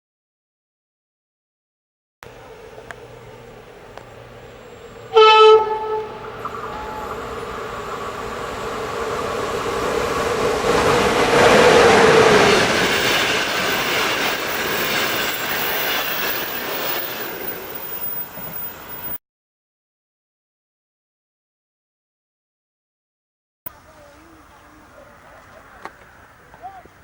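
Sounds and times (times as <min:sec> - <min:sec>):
locomotive hum: 0:02.2 - 0:19.2
train passing: 0:02.2 - 0:19.2, 0:23.8 - 0:27.0
wheels clattering over rail joints: 0:02.3 - 0:19.2
train horn blast: 0:04.7 - 0:07.6.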